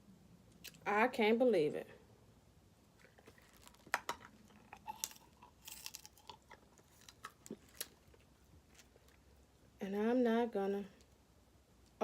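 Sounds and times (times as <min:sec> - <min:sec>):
chewing close to microphone: 0:03.0 - 0:09.2
crab shell cracking: 0:03.2 - 0:08.9.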